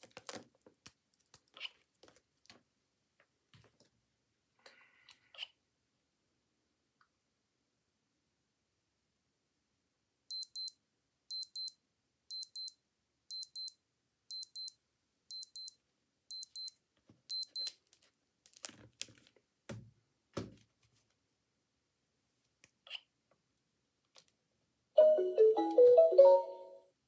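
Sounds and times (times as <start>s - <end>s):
digital watch alarm beeping: 10.3s - 17.7s.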